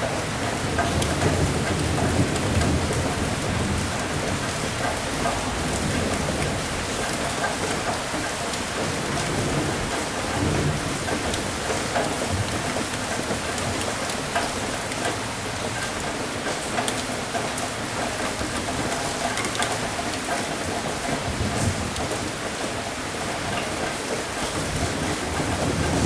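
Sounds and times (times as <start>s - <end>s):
rain pattering: 0.0s - 26.0s.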